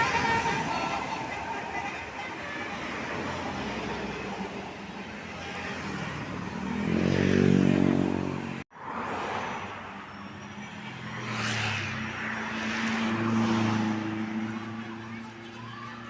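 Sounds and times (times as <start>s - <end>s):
bus engine revving: 2.7s - 8.7s
vehicle passing with rushing: 2.8s - 15.5s.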